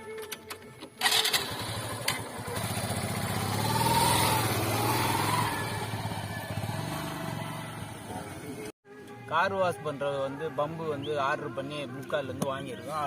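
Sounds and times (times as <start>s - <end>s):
vehicle engine starting and running: 0.4s - 8.7s.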